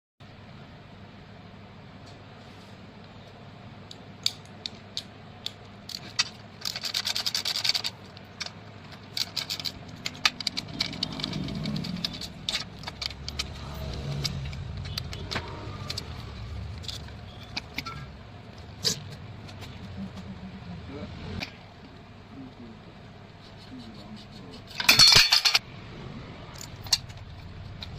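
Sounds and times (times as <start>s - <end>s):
metal parts and tools clinking: 4.2s - 19.8s, 24.6s - 25.6s, 26.5s - 27.9s
low rumble: 9.7s - 21.4s.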